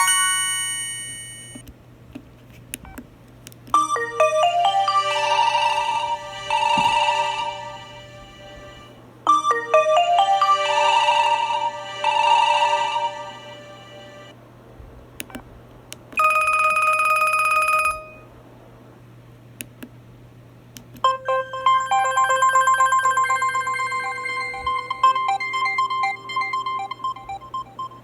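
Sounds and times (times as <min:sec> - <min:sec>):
melodic ringtone: 0:00.0 - 0:01.6, 0:03.8 - 0:14.3, 0:21.1 - 0:28.0
warbling phone ring: 0:00.0 - 0:01.6, 0:03.8 - 0:14.3, 0:16.2 - 0:18.2, 0:21.1 - 0:28.0
steady tone: 0:03.8 - 0:14.4, 0:21.1 - 0:28.0.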